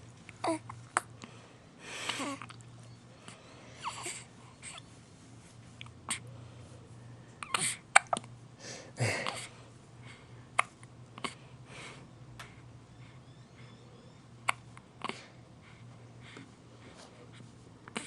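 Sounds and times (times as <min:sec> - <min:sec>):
baby hiccuping: 0:07.4 - 0:08.3, 0:14.4 - 0:15.2
baby breathing sounds: 0:15.0 - 0:18.0.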